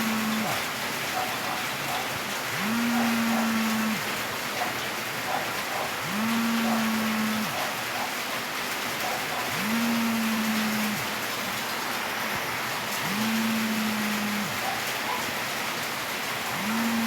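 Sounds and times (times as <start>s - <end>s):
phone vibration motor buzzing: 0.0s - 0.7s, 2.5s - 4.2s, 6.0s - 7.8s, 9.5s - 11.2s, 12.9s - 14.6s, 16.5s - 17.0s.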